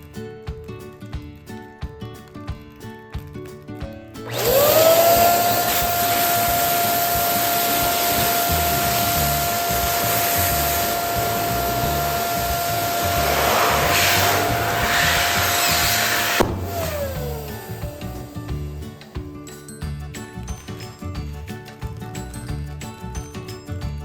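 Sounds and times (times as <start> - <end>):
plucked background music: 0.0 - 24.0
electric pump motor whine: 4.3 - 18.5
rush of air: 7.7 - 18.1.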